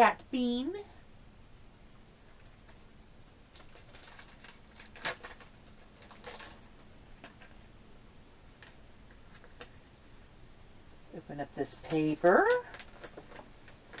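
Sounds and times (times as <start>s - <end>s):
packaging crinkling: 2.3s - 7.6s, 12.4s - 14.0s.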